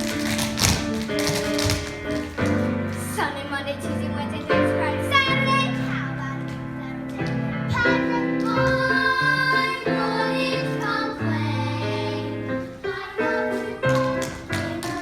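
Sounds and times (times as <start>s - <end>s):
instrumental accompaniment: 0.0s - 15.0s
child singing: 7.7s - 13.9s.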